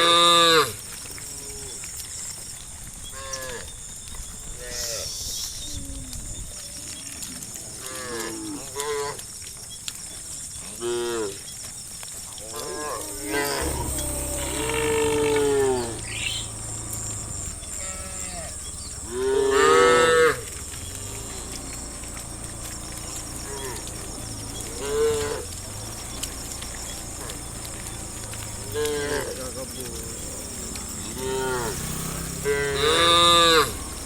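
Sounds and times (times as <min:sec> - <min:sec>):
cows mooing: 0:12.5 - 0:34.0.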